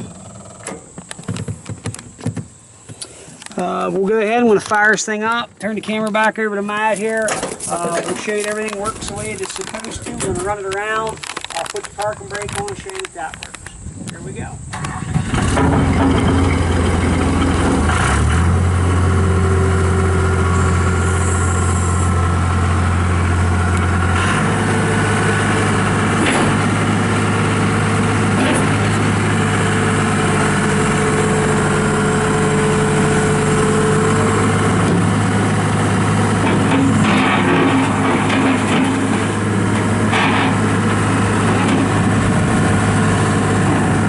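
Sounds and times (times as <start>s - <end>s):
diesel engine idling: 15.1s - 44.0s.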